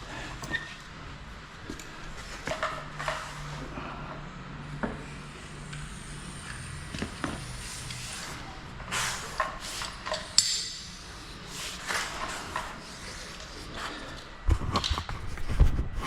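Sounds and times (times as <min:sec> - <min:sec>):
hand tools clicking and scraping: 0:08.9 - 0:15.2.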